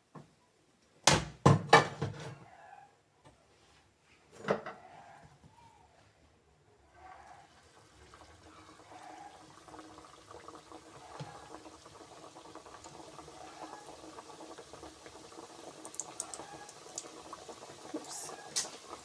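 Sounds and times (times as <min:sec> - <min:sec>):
dough frying in bubbling oil: 0:07.2 - 0:19.0.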